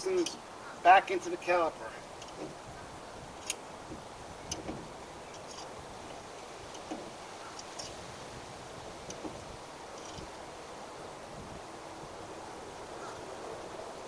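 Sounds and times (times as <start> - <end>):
faint steady hiss: 0.0 - 14.0
light metallic clicks and taps: 0.2 - 0.4, 4.5 - 8.0.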